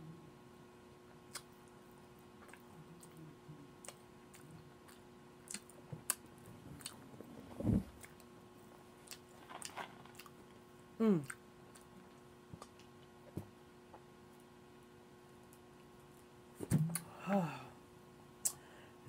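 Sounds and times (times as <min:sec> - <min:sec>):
woman chewing food: 0:01.2 - 0:14.1.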